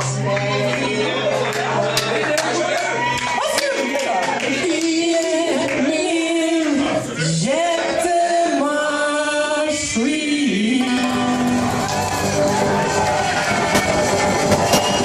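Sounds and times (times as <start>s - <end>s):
man singing: 4.6s - 11.9s
unplugged band playing: 10.6s - 15.0s.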